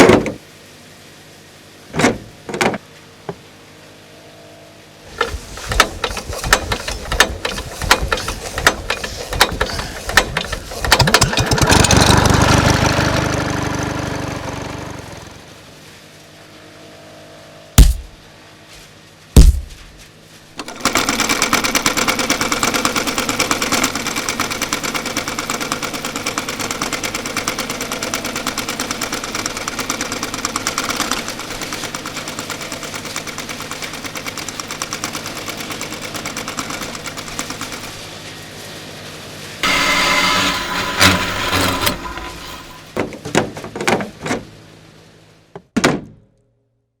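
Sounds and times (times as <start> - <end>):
irregular clatter and knocks: 5.1 - 12.0, 18.8 - 20.8
machine rattling: 5.1 - 12.8, 17.8 - 18.2, 19.4 - 20.0, 20.6 - 38.2, 39.6 - 43.0.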